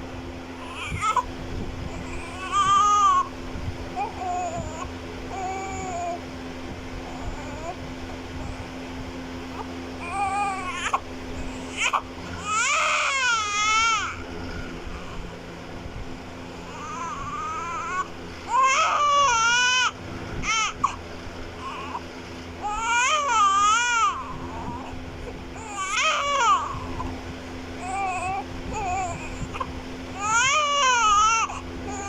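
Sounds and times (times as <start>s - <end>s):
newborn baby crying: 0.6s - 1.3s, 2.0s - 3.3s, 4.0s - 6.2s, 9.6s - 14.2s, 16.6s - 21.0s, 22.6s - 24.9s, 25.6s - 27.1s, 27.8s - 32.0s.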